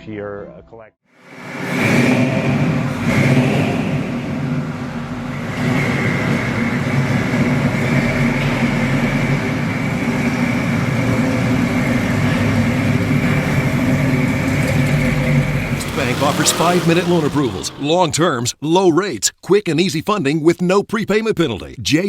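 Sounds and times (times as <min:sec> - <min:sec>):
car engine running: 0:01.2 - 0:18.1.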